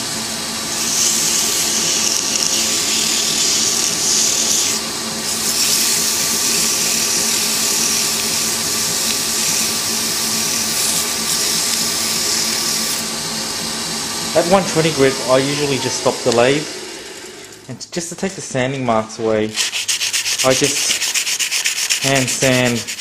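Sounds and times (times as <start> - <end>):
lathe motor humming: 0.0 - 17.7, 19.5 - 23.0
sandpaper hissing scrape: 19.5 - 23.0.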